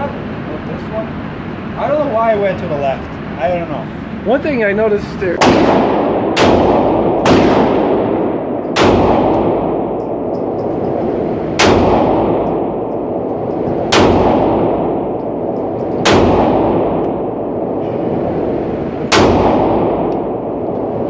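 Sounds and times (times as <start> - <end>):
echoing gunshots: 5.4 - 17.8, 18.5 - 21.0.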